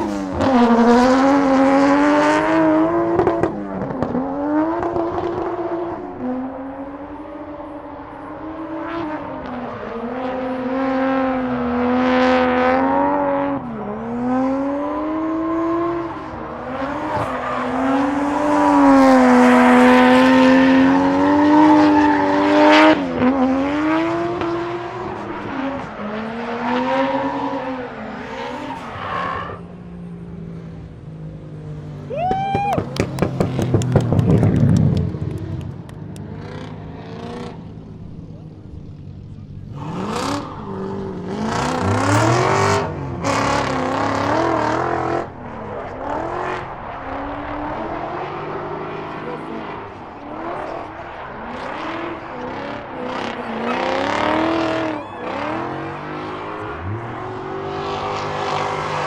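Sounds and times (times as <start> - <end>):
car engine at high revs: 0.0 - 59.0.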